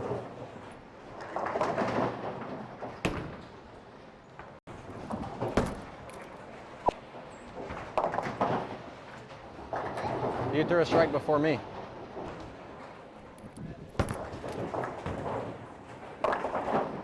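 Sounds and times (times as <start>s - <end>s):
bowling pins rattling: 4.7s - 6.8s, 13.0s - 15.7s
sharp knocks of balls and pins: 4.8s - 6.5s, 13.2s - 15.6s.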